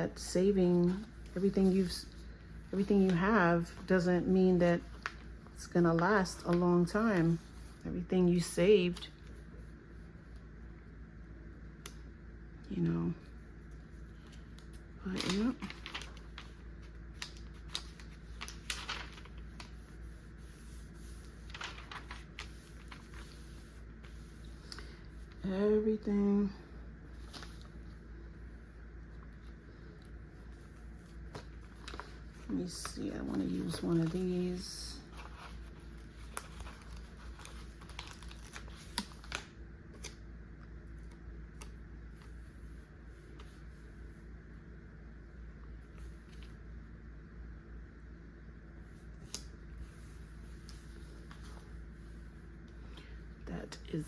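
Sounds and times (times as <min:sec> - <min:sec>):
faint low hum: 0:00.0 - 0:54.0
paper rustling: 0:00.2 - 0:09.8, 0:13.7 - 0:25.5, 0:27.1 - 0:28.0, 0:29.1 - 0:40.2, 0:48.9 - 0:53.1.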